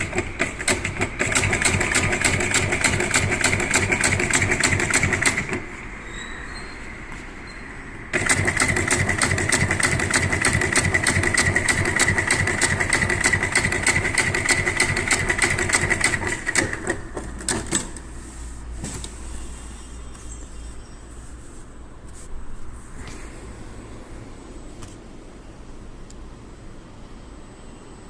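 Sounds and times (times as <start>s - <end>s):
sewing machine stitching: 0.0s - 5.7s, 8.1s - 18.0s.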